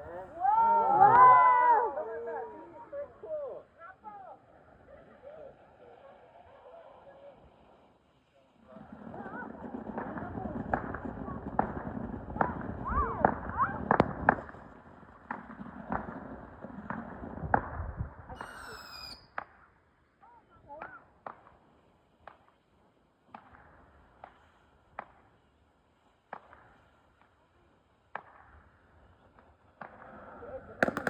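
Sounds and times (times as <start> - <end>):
fireworks bangs and crackles: 7.4 - 31.0
firework whistle: 18.3 - 19.5.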